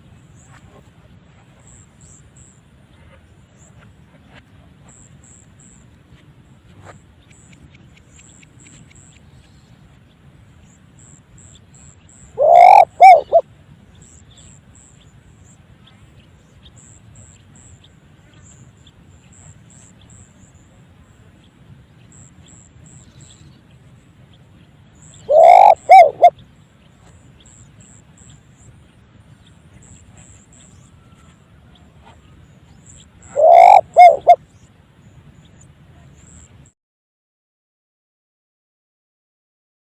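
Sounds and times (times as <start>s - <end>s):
dove cooing: 12.4s - 13.4s, 25.2s - 26.4s, 33.2s - 34.4s.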